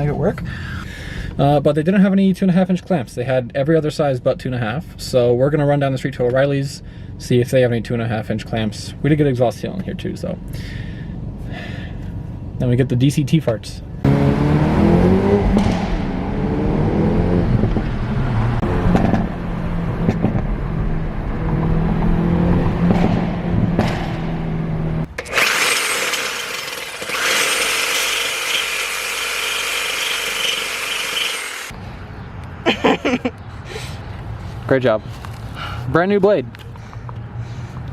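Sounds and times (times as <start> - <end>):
car exhaust accelerating: 14.0 - 25.1
power saw cutting metal pipe: 25.1 - 31.7.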